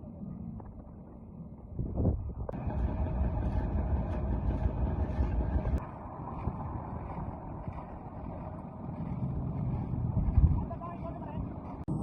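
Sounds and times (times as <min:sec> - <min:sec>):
concrete machine engine running: 0:02.6 - 0:05.8.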